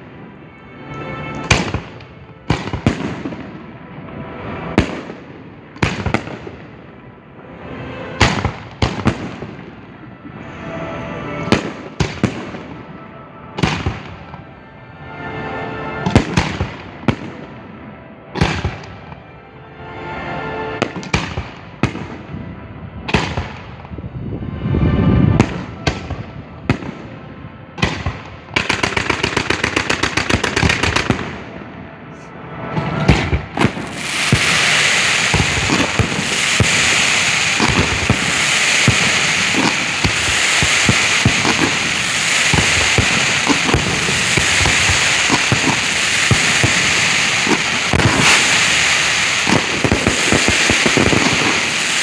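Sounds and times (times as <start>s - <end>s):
firework crackle with bangs: 1.4s - 3.6s, 4.5s - 6.8s, 27.8s - 31.4s, 33.0s - 52.0s
firework mortar launches: 33.0s - 52.0s
fast string of firework shots: 33.1s - 52.0s
firework shell bursts: 33.7s - 52.0s.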